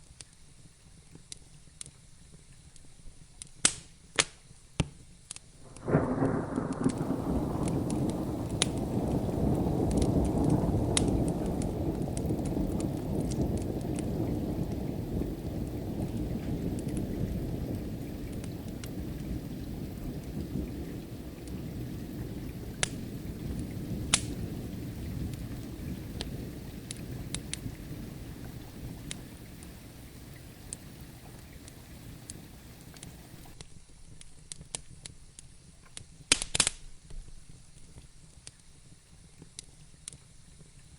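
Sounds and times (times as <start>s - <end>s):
wood fire crackling: 5.3s - 33.6s, 36.3s - 36.8s
steady rain: 5.6s - 33.6s
thunder rolling: 5.6s - 33.6s.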